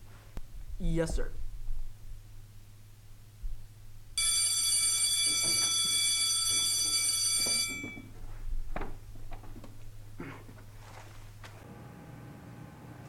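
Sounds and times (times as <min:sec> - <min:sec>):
electronic school bell ringing: 0:04.2 - 0:08.2
faint knocks and shuffling: 0:05.1 - 0:11.6.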